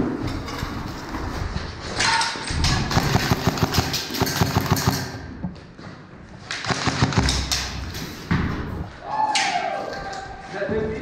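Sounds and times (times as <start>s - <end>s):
airsoft gunfire clatter: 2.7s - 5.3s, 6.6s - 8.0s
pellet impacts: 6.6s - 7.7s.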